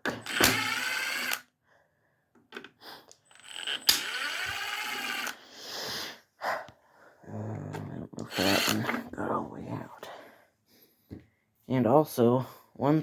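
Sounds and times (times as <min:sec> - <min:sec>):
cordless power driver spinning: 0:00.1 - 0:01.5, 0:03.3 - 0:05.4, 0:08.2 - 0:09.0.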